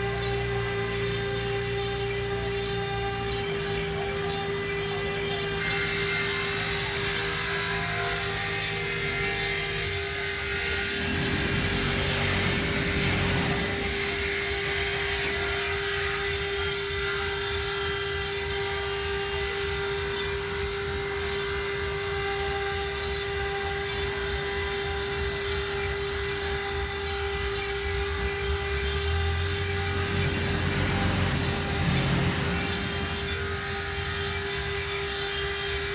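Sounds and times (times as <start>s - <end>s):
engraving machine spindle whine: 0.0s - 35.9s
hiss of cutting stone: 9.5s - 19.8s, 25.2s - 35.9s.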